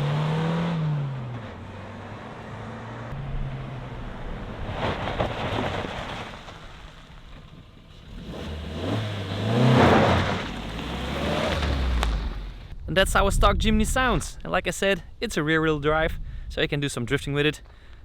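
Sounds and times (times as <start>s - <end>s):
car engine accelerating past: 0.0s - 5.8s, 8.1s - 12.7s.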